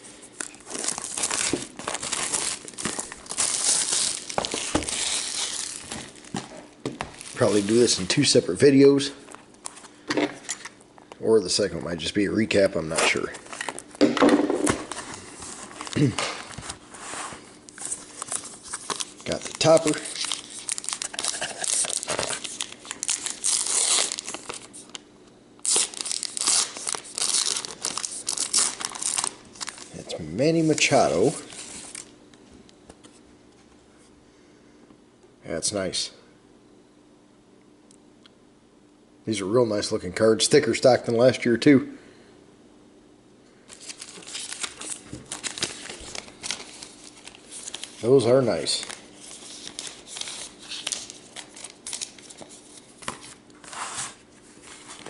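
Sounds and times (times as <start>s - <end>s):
plastic wrapping crinkling and tearing: 0.3s - 8.4s, 14.7s - 16.8s, 17.6s - 25.0s, 25.6s - 32.1s, 43.7s - 55.0s.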